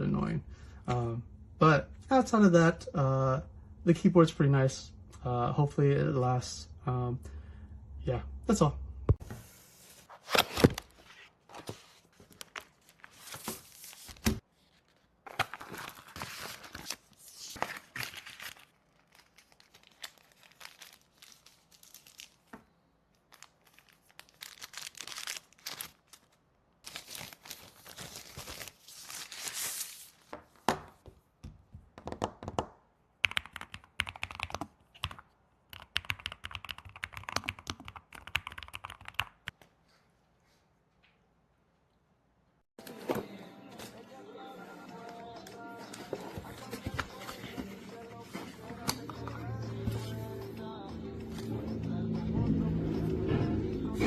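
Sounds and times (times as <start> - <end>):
rustling and crinkling handling noise: 9.2 - 30.6, 44.8 - 50.5.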